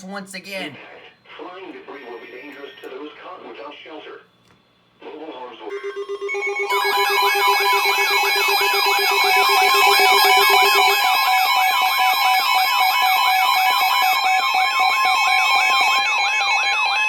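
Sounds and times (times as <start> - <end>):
steady electronic tones: 5.7 - 17.0
warbling alarm: 5.7 - 17.0.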